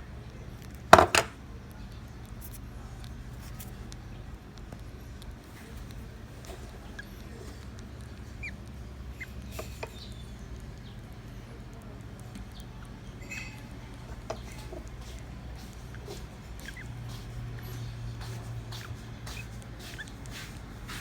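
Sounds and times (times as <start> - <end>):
lovebirds high chirps: 5.5 - 11.2, 12.5 - 21.0.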